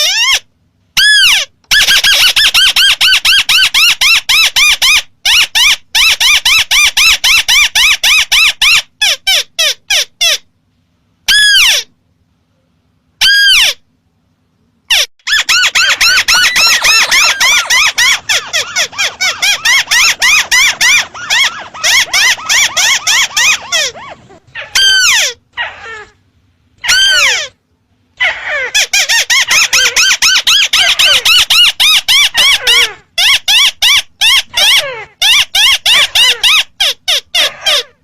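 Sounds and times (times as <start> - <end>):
descending bird calls: 14.9 - 26.2
bird calling rapid clipped notes: 15.3 - 23.6.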